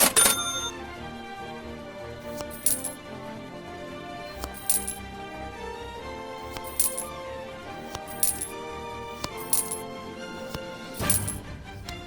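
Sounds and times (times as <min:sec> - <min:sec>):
cash register ka-ching: 0:00.0 - 0:00.8, 0:02.2 - 0:03.0, 0:04.3 - 0:05.0, 0:06.4 - 0:07.1, 0:07.8 - 0:09.8, 0:10.4 - 0:12.0
background music: 0:00.0 - 0:12.0.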